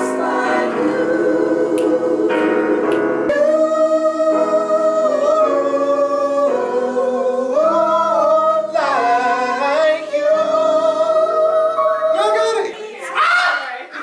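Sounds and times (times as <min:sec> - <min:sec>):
gospel choir singing: 0:00.0 - 0:13.1
instrumental backing: 0:00.0 - 0:13.1.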